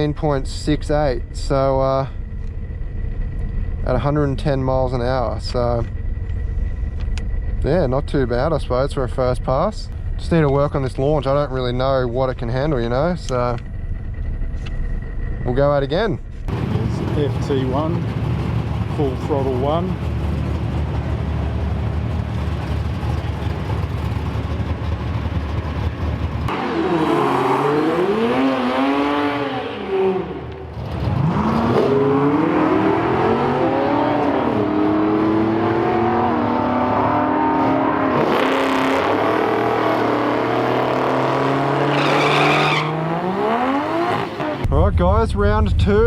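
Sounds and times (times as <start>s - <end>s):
car engine revving: 10.3s - 44.7s.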